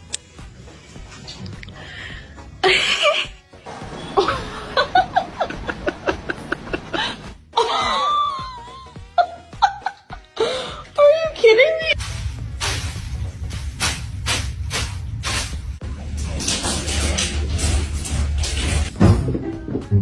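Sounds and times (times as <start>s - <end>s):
music: 0.0s - 20.0s
person laughing: 2.6s - 3.4s, 4.2s - 10.8s.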